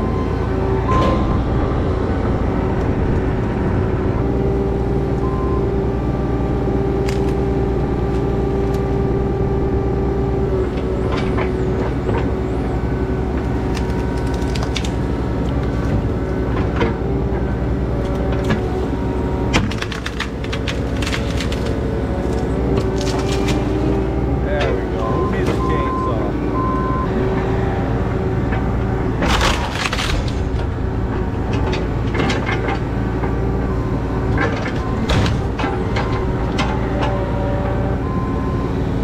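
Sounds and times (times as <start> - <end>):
diesel engine running: 0.0 - 39.0
knocks and clatters: 28.4 - 37.4.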